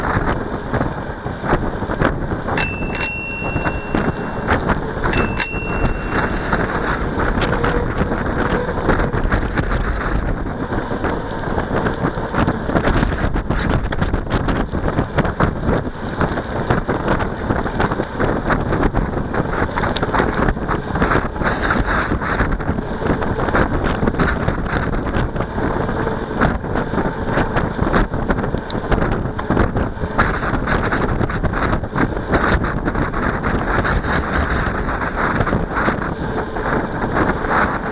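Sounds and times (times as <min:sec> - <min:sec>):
wind buffeting microphone: 0:00.0 - 0:37.9
bicycle bell ringing: 0:02.6 - 0:07.5.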